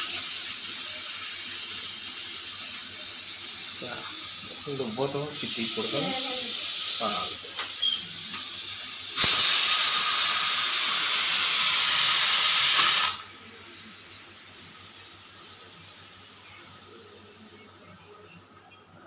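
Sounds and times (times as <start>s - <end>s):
pressure cooker whistle hissing: 0.0s - 13.3s.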